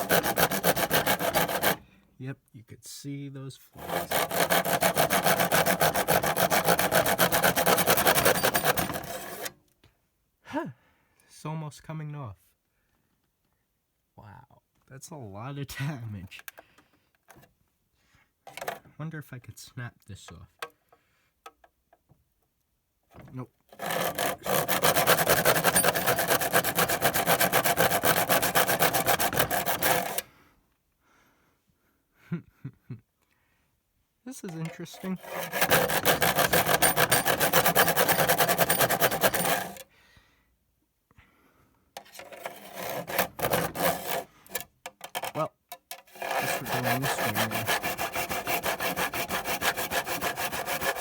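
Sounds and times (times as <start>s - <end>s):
hand saw cutting plastic: 0.0s - 1.8s, 3.8s - 9.6s, 23.2s - 30.3s, 34.4s - 39.9s, 42.0s - 51.0s.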